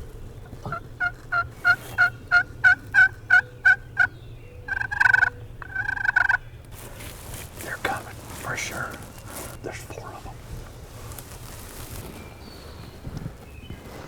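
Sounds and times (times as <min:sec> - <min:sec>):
turkey gobbles: 0:00.4 - 0:04.1, 0:04.7 - 0:11.1
turkey yelps: 0:00.4 - 0:04.1, 0:04.7 - 0:06.4.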